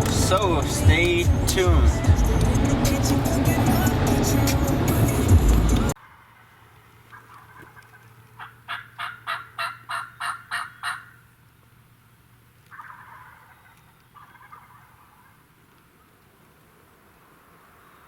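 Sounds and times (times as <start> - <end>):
distant turkey calls: 6.0 - 11.4, 12.6 - 16.2
turkey yelping: 6.4 - 11.3, 12.7 - 15.4.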